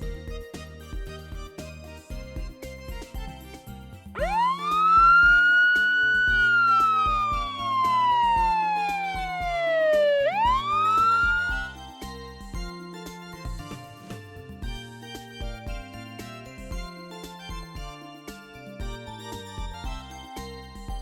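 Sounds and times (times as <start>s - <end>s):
background music: 0.0s - 21.0s
siren winding up and down: 4.2s - 12.0s.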